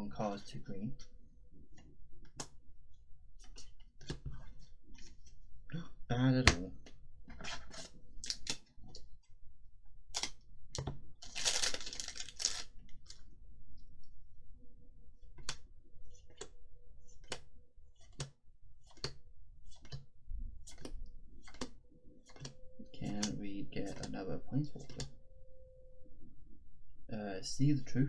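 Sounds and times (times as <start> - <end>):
trading cards snapping: 6.4 - 6.7, 8.2 - 8.6, 10.2 - 10.4, 11.4 - 12.7
cards rustling: 7.8 - 8.6, 10.2 - 12.7.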